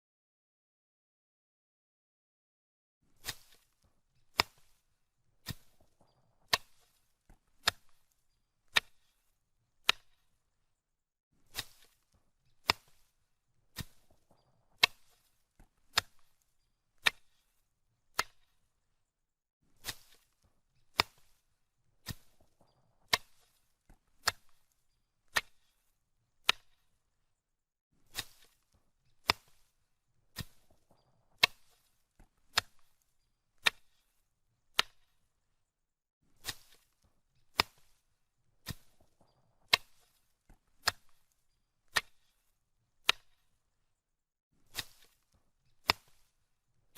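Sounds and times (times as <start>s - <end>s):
machete chopping through grass: 3.2s - 4.8s, 5.4s - 7.0s, 8.7s - 9.1s, 9.8s - 10.2s, 11.4s - 13.1s, 13.8s - 16.4s, 19.8s - 21.4s, 22.0s - 23.6s, 24.2s - 24.7s, 26.4s - 26.8s, 28.0s - 29.7s, 30.4s - 33.0s, 36.4s - 38.0s, 38.6s - 39.1s, 39.7s - 41.3s, 41.9s - 42.4s, 43.0s - 43.4s, 44.7s - 46.3s.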